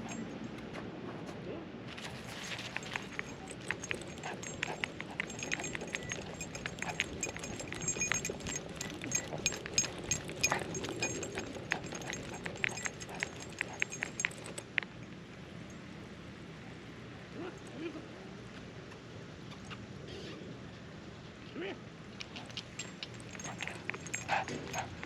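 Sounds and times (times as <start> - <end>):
dog collar tags jingling: 0.0 - 0.5, 1.9 - 15.8, 22.2 - 25.0
dog paws clicking: 1.9 - 14.9, 22.2 - 25.0.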